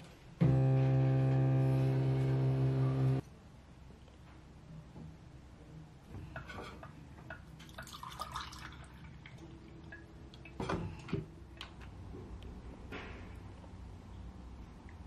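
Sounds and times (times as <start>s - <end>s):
liquid dripping and pouring: 6.7s - 11.0s.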